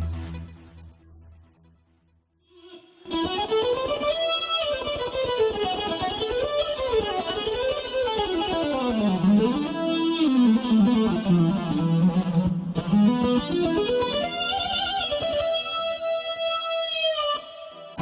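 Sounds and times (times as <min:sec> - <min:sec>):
distorted synthesizer lead: 0:00.0 - 0:02.0.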